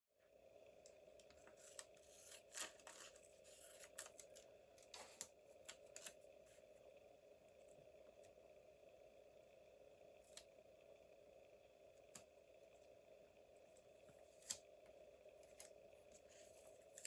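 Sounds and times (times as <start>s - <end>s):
low steady hum: 0.2s - 17.0s
scissors snipping paper: 1.2s - 6.2s, 14.3s - 14.6s
paper rustling: 1.3s - 6.2s.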